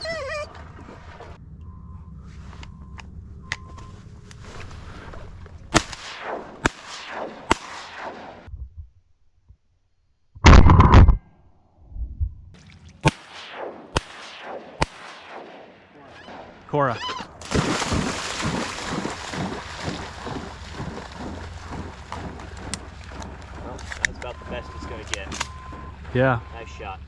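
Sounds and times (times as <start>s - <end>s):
shotgun blasts: 5.7s - 8.5s, 13.0s - 23.8s.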